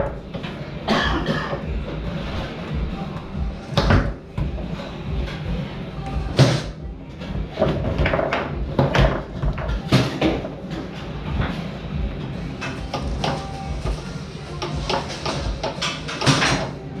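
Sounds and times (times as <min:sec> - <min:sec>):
foosball rods clacking: 0:07.5 - 0:11.7, 0:12.4 - 0:17.0.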